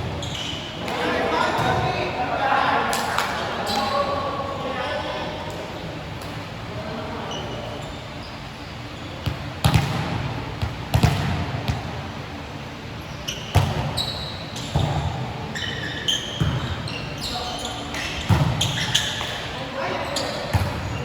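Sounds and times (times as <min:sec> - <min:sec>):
short high squeaks: 0:00.2 - 0:00.7, 0:13.1 - 0:14.8, 0:15.5 - 0:19.3
basketball bouncing on a court: 0:09.2 - 0:11.9.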